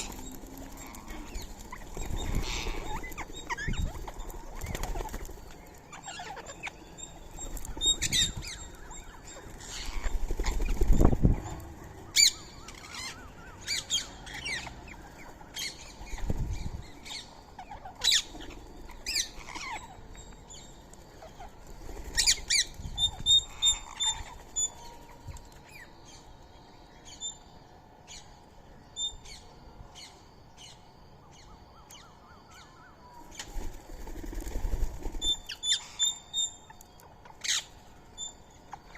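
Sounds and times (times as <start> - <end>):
parakeets chirping and squawking: 0.0 - 20.4, 22.2 - 24.8.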